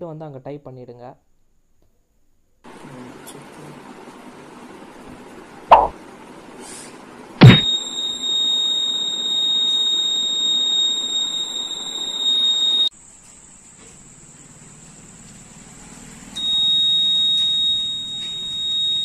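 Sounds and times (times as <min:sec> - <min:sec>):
sharp knock: 0:05.7 - 0:06.0, 0:07.4 - 0:07.7
high-pitched buzzer tone: 0:07.4 - 0:12.9.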